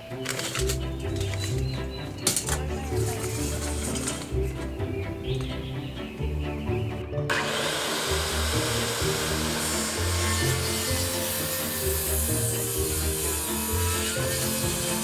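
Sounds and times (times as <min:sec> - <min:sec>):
background music with low notes: 0:00.0 - 0:15.0
saw cutting wooden boards: 0:00.4 - 0:05.6, 0:07.3 - 0:15.0.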